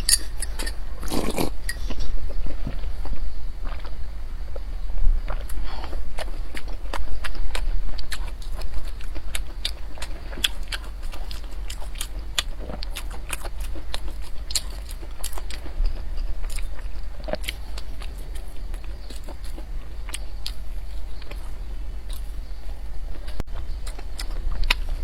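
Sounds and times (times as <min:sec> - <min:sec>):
chewing crunchy bread: 0:00.0 - 0:25.0
steady low hum: 0:00.0 - 0:25.0.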